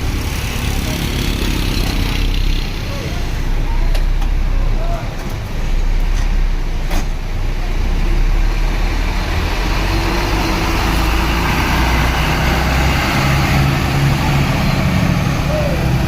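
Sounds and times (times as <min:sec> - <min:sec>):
bus engine rumbling: 0:00.0 - 0:16.0.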